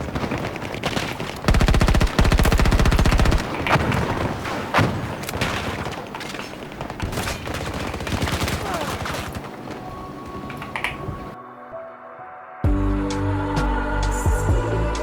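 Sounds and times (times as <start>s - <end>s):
video game gunfire: 0.0s - 6.0s.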